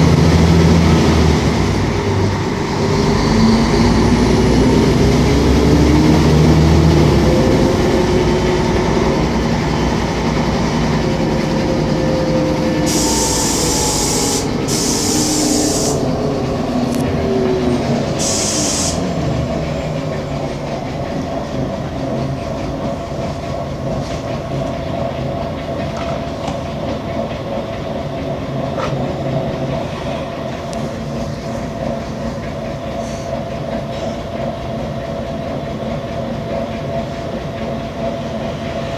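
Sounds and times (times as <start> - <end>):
bus diesel engine: 0.0 - 38.9
compressed air hiss: 12.8 - 16.1, 18.1 - 19.1.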